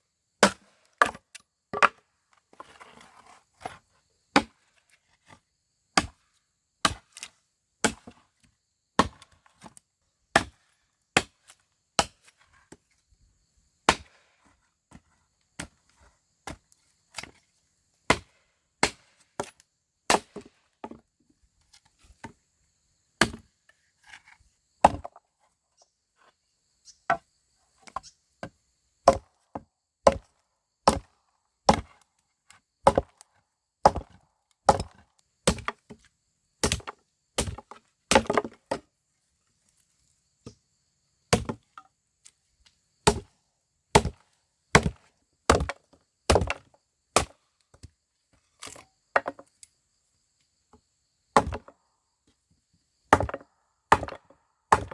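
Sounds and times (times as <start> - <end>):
blade chopping wood: 0.4 - 2.0, 6.0 - 6.2, 9.0 - 9.3, 10.3 - 10.6, 13.9 - 14.2, 18.1 - 19.5, 20.1 - 21.0, 23.2 - 23.5, 24.8 - 25.1, 29.0 - 29.3, 30.0 - 31.1, 31.7 - 31.9, 32.8 - 33.2, 33.8 - 36.0, 36.6 - 38.8, 41.3 - 41.6, 43.0 - 43.3, 43.9 - 47.8, 48.6 - 49.5, 51.4 - 51.7, 53.1 - 54.9.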